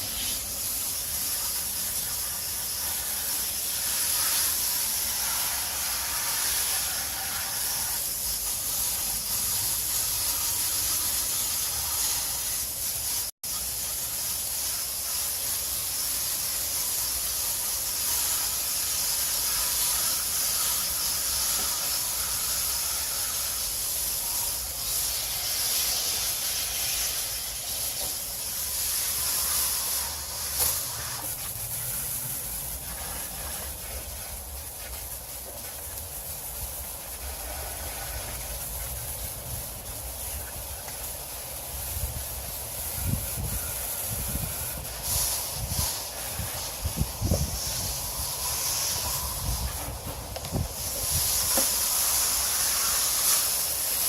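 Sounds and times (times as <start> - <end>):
garden hose spraying water: 0.0 - 54.0.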